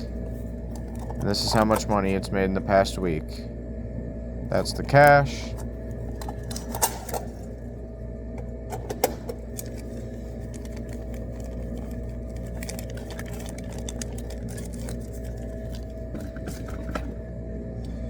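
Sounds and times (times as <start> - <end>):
vending machine electrical hum: 0.0 - 18.0
sharp clicks and rattles: 8.7 - 17.1.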